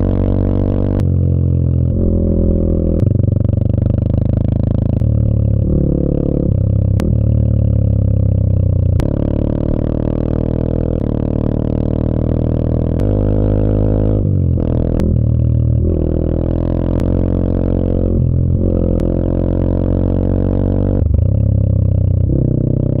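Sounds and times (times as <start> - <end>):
motorcycle engine droning: 0.0 - 23.0.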